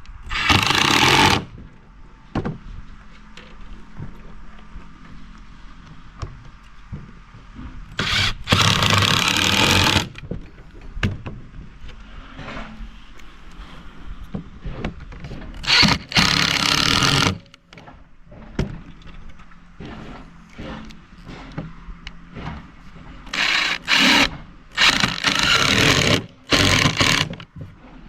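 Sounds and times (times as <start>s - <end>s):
impact driver driving screws: 0.3s - 1.5s, 8.0s - 10.2s, 15.6s - 17.5s, 23.3s - 27.4s.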